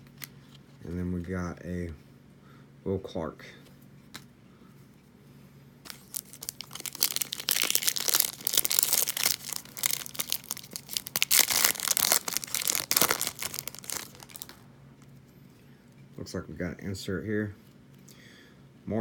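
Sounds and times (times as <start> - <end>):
plastic wrapper tearing and crinkling: 5.9 - 14.6.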